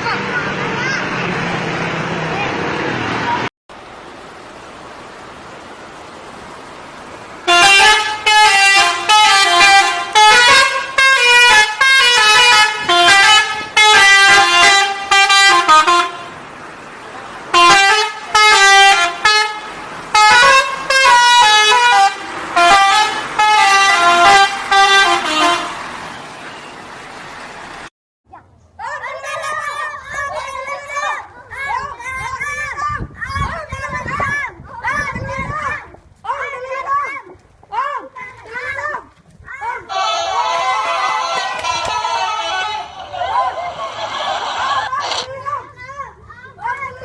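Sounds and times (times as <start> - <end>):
bus musical horn: 7.4 - 16.5, 17.5 - 26.8, 39.9 - 44.1.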